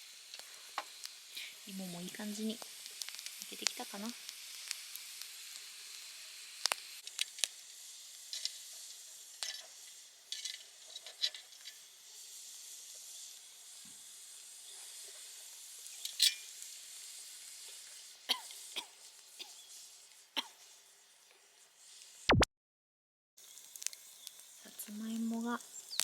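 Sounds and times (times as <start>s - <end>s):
campfire crackling and popping: 0.2s - 11.0s, 23.4s - 26.0s.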